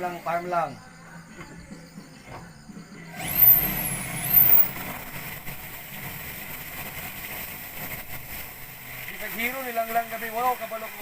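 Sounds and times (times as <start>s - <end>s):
high whistle: 3.2s - 4.8s
loud hissing rush: 3.2s - 11.0s.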